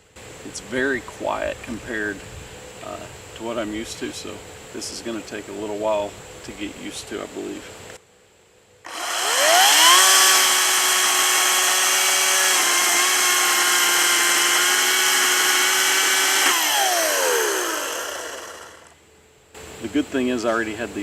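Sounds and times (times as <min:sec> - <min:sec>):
electric chainsaw motor whine: 0:08.9 - 0:19.0.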